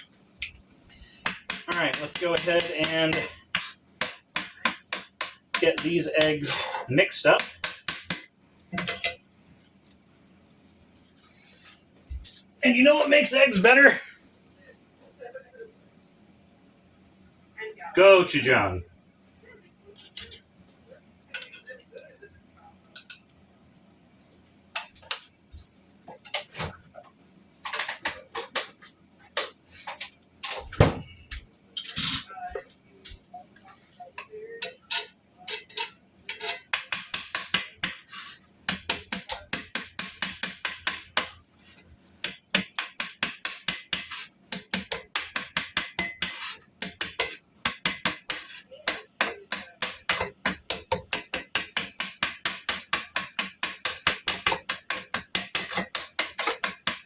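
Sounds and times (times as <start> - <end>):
utensil knocking and scraping pan: 0.9 - 9.2, 34.2 - 57.0.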